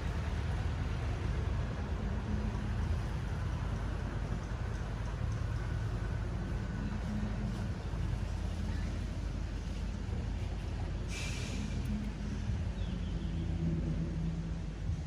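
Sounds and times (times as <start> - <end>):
vehicle engine humming: 0.0 - 15.0
short hiss: 11.1 - 11.8.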